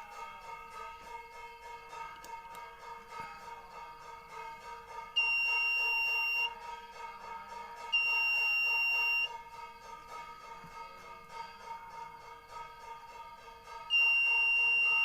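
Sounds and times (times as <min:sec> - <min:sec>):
background music: 0:00.0 - 0:15.0
shrill alarm buzzer beeps: 0:05.1 - 0:06.6, 0:07.8 - 0:09.4, 0:13.8 - 0:15.0.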